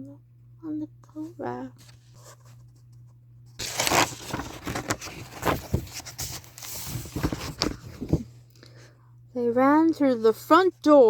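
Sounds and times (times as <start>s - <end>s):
paper rustling and crinkling: 3.6s - 8.3s.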